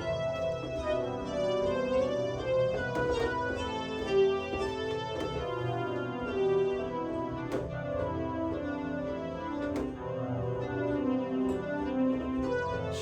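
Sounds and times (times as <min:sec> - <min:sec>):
held organ chords: 0:00.0 - 0:13.0.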